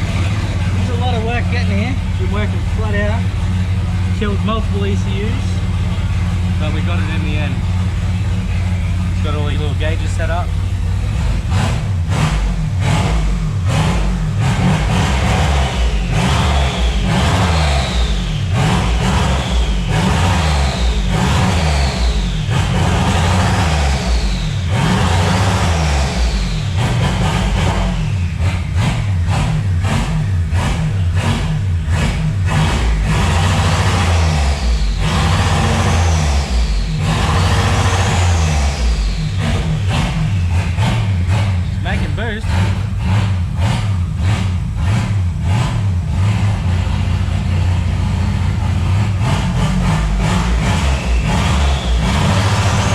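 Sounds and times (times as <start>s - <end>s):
car engine revving: 0.0s - 52.9s
heavy exhaust rumble: 0.0s - 52.9s
turbo whistle: 50.6s - 52.9s.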